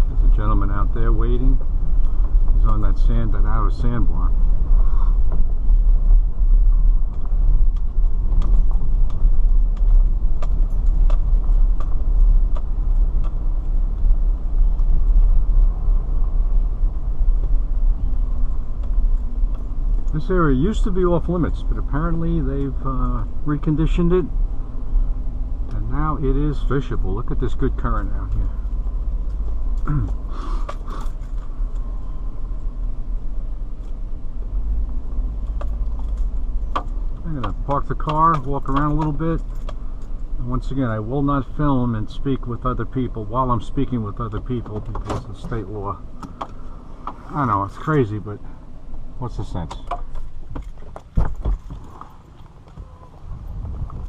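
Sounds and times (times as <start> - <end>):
car engine and road rumble: 0.0 - 54.0
light clicks and rattles: 5.2 - 15.4, 35.3 - 40.4.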